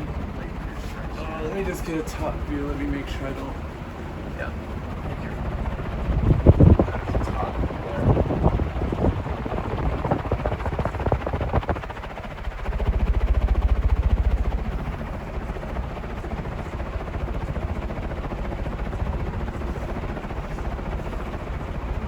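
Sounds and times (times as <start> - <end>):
air buffeting microphone: 0.0 - 15.7
ceiling fan whooshing: 0.0 - 22.0.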